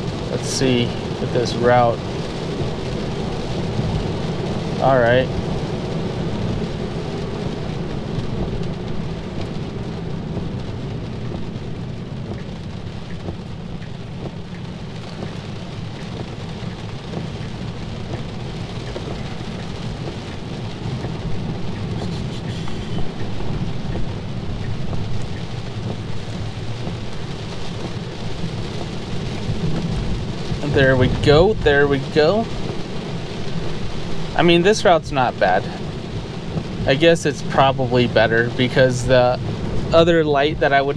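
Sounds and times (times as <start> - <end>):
heavy rain on car roof: 0.0 - 40.9
tyres rumbling on wet road: 0.0 - 40.9.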